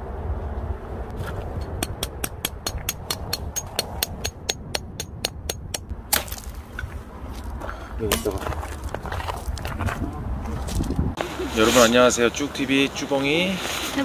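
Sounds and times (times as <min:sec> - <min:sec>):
wind on microphone: 0:08.5 - 0:11.6.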